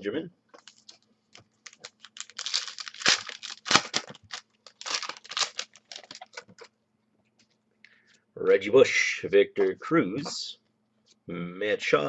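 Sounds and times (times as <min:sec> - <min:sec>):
wrapper tearing and crinkling: 0:01.6 - 0:06.6.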